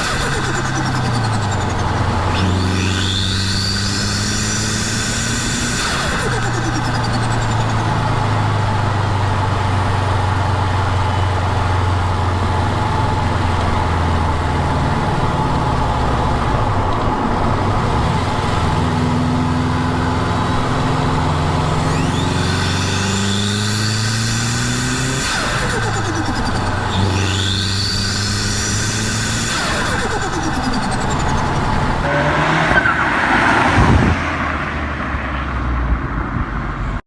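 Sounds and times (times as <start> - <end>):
turbo whistle: 0.0 - 8.2, 21.6 - 33.1
car engine at held revs: 0.0 - 35.6.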